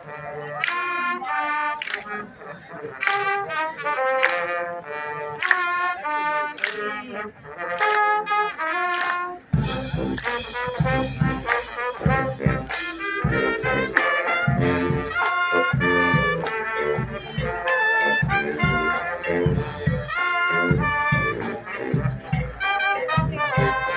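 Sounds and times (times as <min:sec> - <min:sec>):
brass band playing: 0:00.0 - 0:23.9
steady beat: 0:09.5 - 0:23.9
low bass notes: 0:09.6 - 0:23.9.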